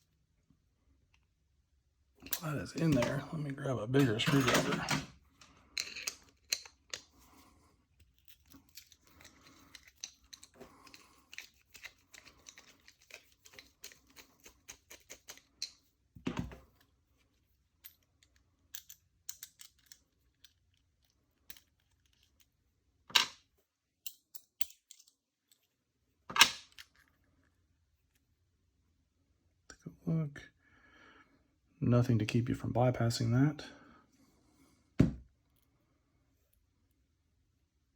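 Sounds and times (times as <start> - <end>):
metallic clicks and scrapes: 4.0 - 7.4, 8.0 - 15.9.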